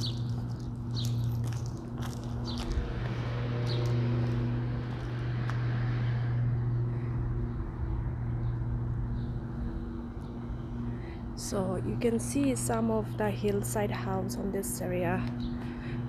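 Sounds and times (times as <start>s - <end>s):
bird chirps: 0.0s - 1.4s
car passing: 0.0s - 13.2s
steady low hum: 0.0s - 16.0s.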